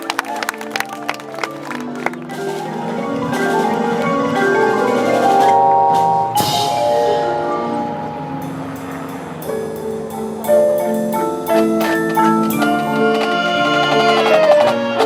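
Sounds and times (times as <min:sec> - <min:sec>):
mallet percussion: 0:00.0 - 0:15.0
marching band playing chords: 0:00.0 - 0:15.0
cymbal crash ringing: 0:06.3 - 0:11.3.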